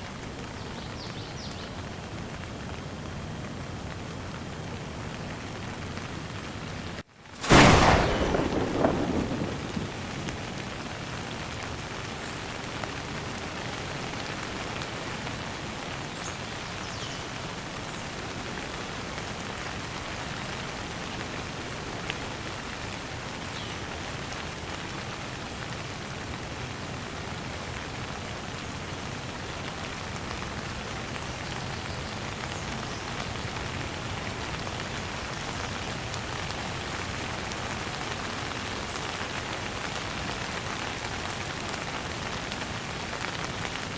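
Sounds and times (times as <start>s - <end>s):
steady rain falling: 0.0s - 43.9s
low rumble: 7.4s - 10.4s.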